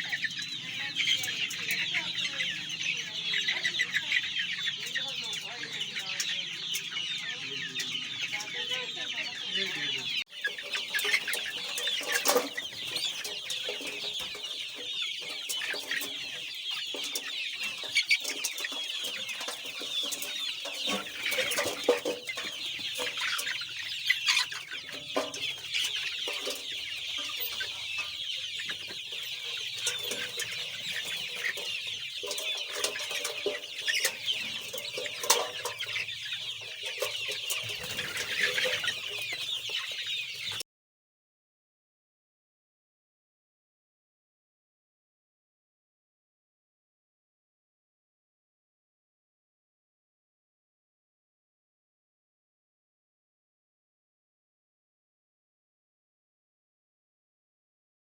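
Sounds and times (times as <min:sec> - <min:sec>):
chickens peeping and clucking: 0:00.0 - 0:40.6.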